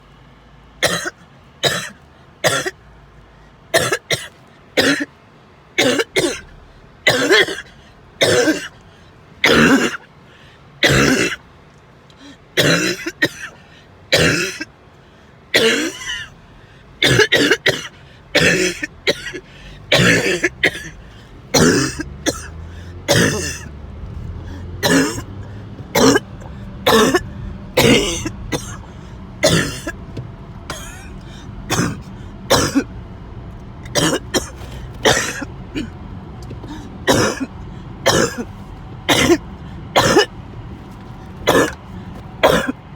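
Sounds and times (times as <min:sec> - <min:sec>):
person coughing: 0:00.8 - 0:02.8, 0:03.8 - 0:05.1, 0:05.8 - 0:08.8, 0:09.4 - 0:10.0, 0:10.8 - 0:11.4, 0:12.6 - 0:14.7, 0:15.6 - 0:16.3, 0:17.0 - 0:23.7, 0:24.4 - 0:30.0, 0:30.7 - 0:32.9, 0:33.9 - 0:36.0, 0:36.6 - 0:38.5, 0:39.1 - 0:40.3, 0:41.4 - 0:41.8, 0:42.4 - 0:42.8.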